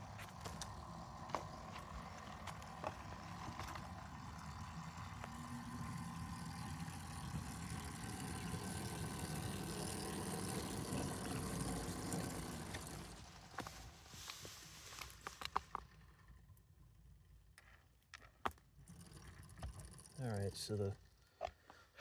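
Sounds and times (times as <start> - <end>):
model locomotive motor humming: 0.0 - 15.6.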